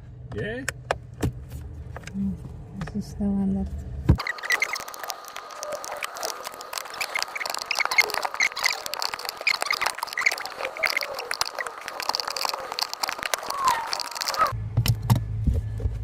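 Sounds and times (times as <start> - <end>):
bird chirps: 4.2 - 14.5.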